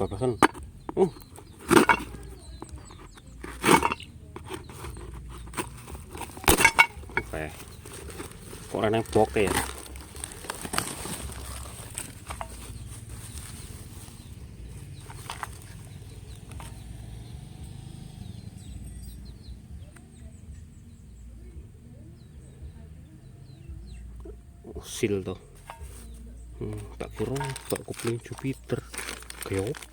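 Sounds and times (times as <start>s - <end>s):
handling clicks and knocks: 0.0s - 17.3s, 25.4s - 29.9s
birds chirping faintly: 0.0s - 29.9s.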